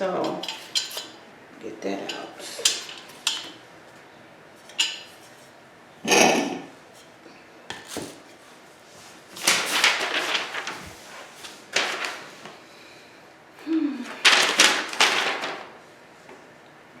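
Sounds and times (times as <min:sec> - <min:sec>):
packaging scraping and rustling: 0:09.1 - 0:12.5, 0:14.2 - 0:15.7.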